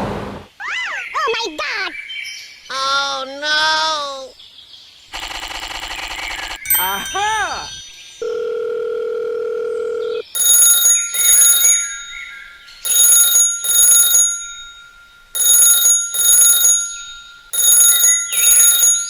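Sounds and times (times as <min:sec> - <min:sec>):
electronic telephone ringing: 0:08.2 - 0:19.0.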